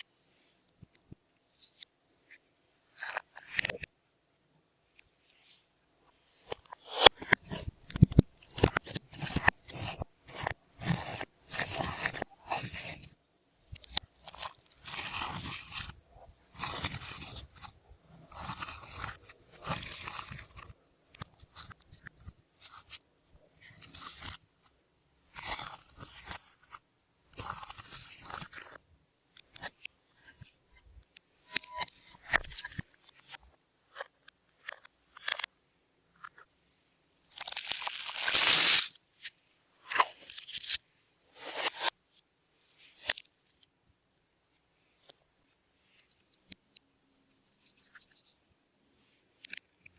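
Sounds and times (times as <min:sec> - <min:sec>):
slime being worked by hand: 0:06.5 - 0:28.8, 0:37.3 - 0:38.9.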